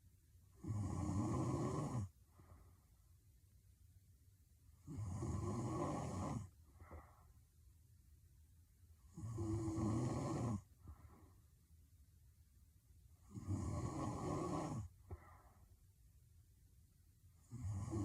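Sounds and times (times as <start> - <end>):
woman snoring heavily: 0.6 - 2.1, 4.8 - 6.5, 9.1 - 10.6, 13.3 - 14.9, 17.4 - 18.0.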